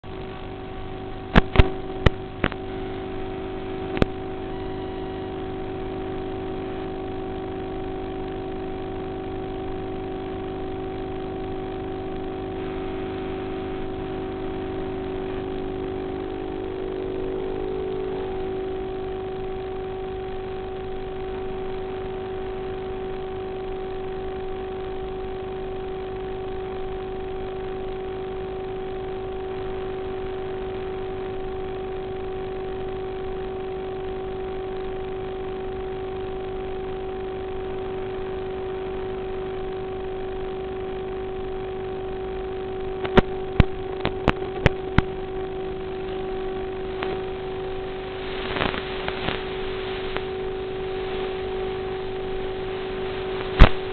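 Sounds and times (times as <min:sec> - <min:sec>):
sharp clicks: 0:01.3 - 0:02.6, 0:43.0 - 0:45.1, 0:53.6 - 0:53.9.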